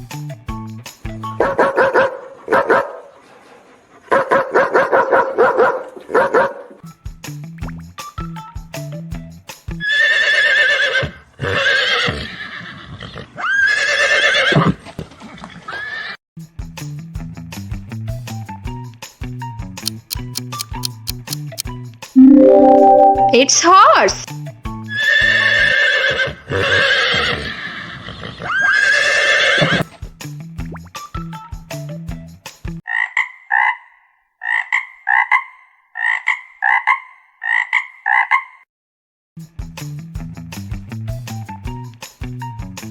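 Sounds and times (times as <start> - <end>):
horse whinnying: 9.8 - 14.7, 25.4 - 29.8
background music: 22.2 - 24.4
frog croaking: 36.0 - 38.4.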